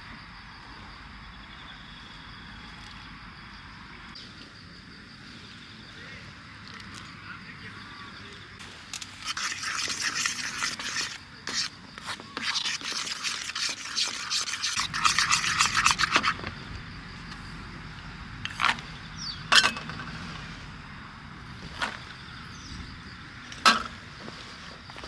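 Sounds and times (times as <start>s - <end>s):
quick scraping strokes: 9.0s - 16.7s.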